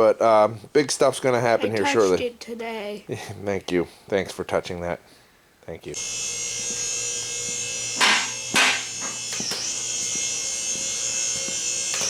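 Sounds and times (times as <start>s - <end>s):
hydraulic pump motor whining: 6.0s - 12.0s.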